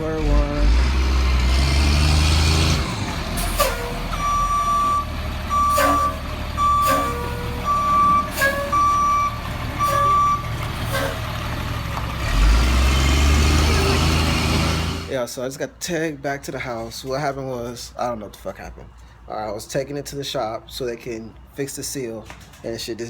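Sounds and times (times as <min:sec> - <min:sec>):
truck engine running low: 0:00.0 - 0:15.1
reversing alarm beeping: 0:03.4 - 0:11.2.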